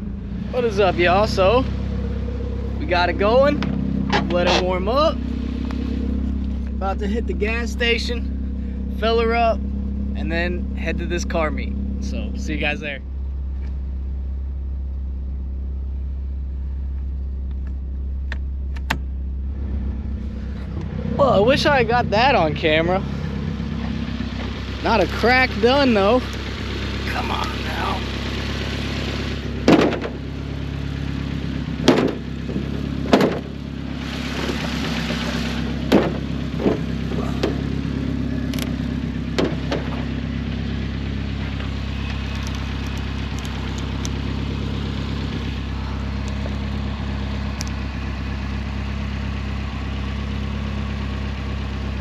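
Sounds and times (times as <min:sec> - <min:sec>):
car engine idling: 0:00.0 - 0:52.0
sharp knocks and clicks: 0:29.7 - 0:30.2, 0:31.8 - 0:33.5, 0:35.9 - 0:37.6, 0:38.5 - 0:40.1.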